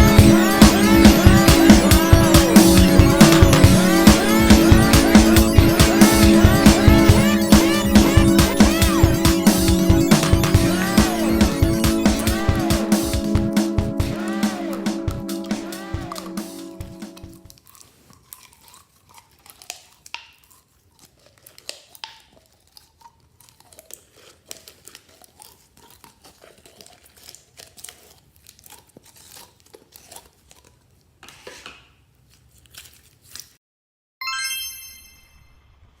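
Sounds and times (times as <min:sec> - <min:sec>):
crackling and crinkling: 0:17.4 - 0:33.6
ringing chime-like note: 0:34.2 - 0:35.9.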